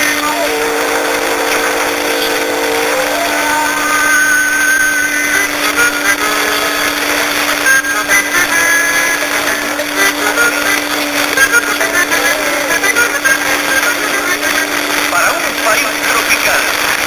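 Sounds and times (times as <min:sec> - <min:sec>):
low radio whistle: 0:00.0 - 0:06.6
faint radio music: 0:00.0 - 0:17.0
radio static hiss: 0:00.0 - 0:17.0.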